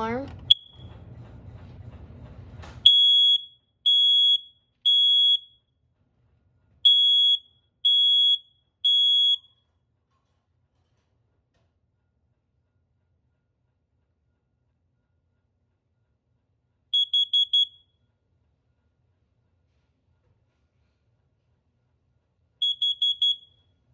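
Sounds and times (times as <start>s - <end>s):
smoke alarm beeps: 0.3s - 0.9s, 2.8s - 5.7s, 6.8s - 9.6s, 17.0s - 17.9s, 22.6s - 23.7s.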